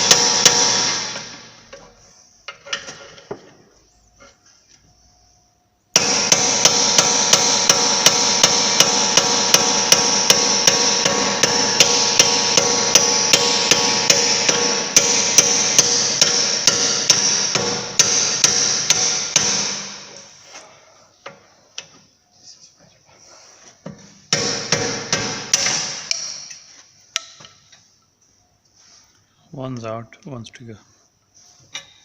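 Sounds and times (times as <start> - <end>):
metal ringing: 6.0 - 20.0
hammer blows on steel: 6.0 - 20.1.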